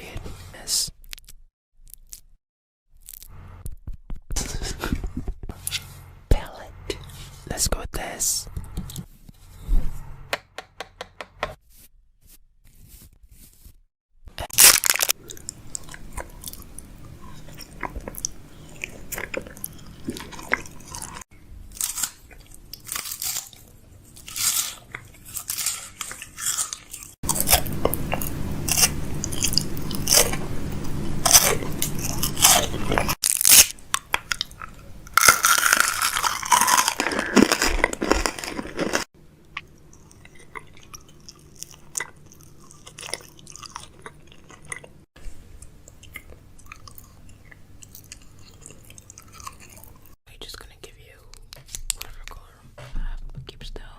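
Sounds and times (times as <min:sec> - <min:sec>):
objects crinkling and crunching: 0:14.4 - 0:44.8.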